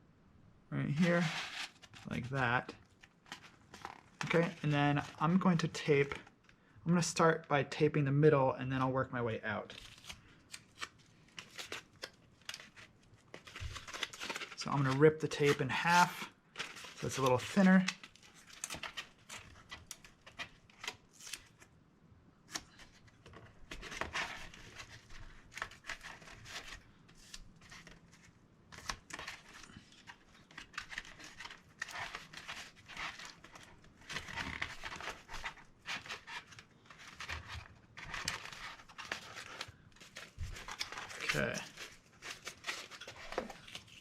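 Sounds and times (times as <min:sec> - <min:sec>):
cardboard rustling: 0:00.9 - 0:05.4, 0:28.8 - 0:44.0.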